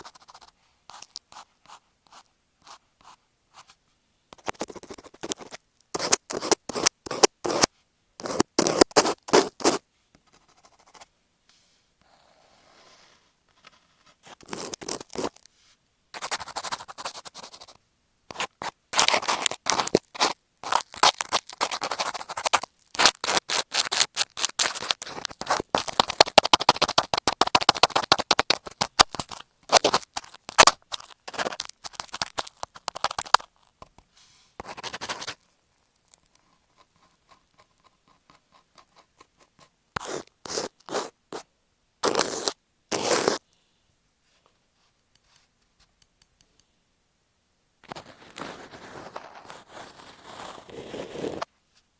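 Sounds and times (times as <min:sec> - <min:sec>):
scratching on microphone: 0:04.4 - 0:11.0, 0:12.7 - 0:15.5, 0:16.2 - 0:34.0, 0:34.6 - 0:35.4, 0:36.2 - 0:41.4, 0:42.0 - 0:43.4, 0:47.8 - 0:51.5.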